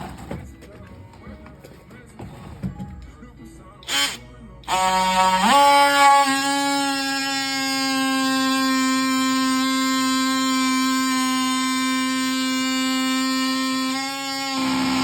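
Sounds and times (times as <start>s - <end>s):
oscillating multi-tool buzzing: 3.8s - 15.0s.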